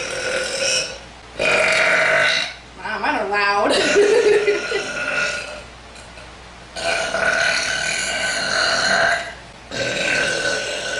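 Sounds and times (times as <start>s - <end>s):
girl burping: 3.7s - 5.6s.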